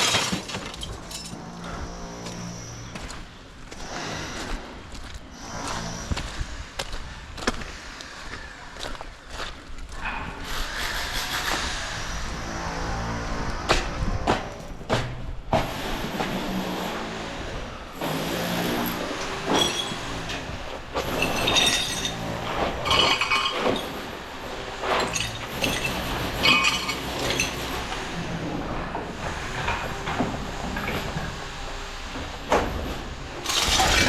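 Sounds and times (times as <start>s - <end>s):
metallic clinking and rattling: 21.0s - 24.2s, 24.8s - 27.9s.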